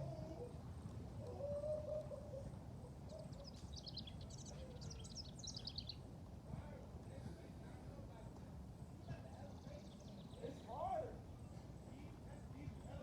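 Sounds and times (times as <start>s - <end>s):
songbird chirping: 3.0s - 6.1s.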